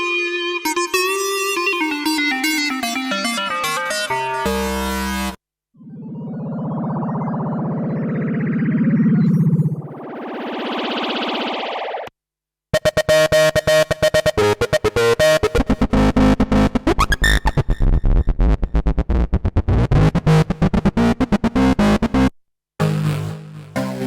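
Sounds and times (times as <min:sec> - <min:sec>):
pulsing sequenced synth notes: 0:04.8 - 0:12.1
rising synth sweep: 0:05.8 - 0:12.1
synthesizer pad: 0:05.8 - 0:12.1.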